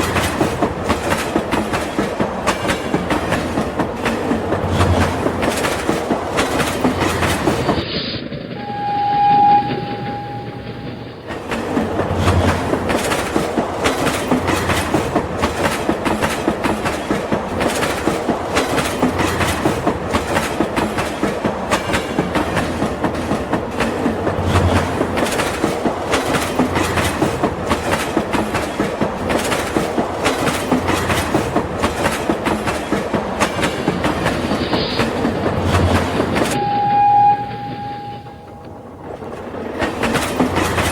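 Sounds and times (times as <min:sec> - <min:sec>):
steady horn or whistle tone: 0:08.6 - 0:11.3, 0:36.6 - 0:38.8.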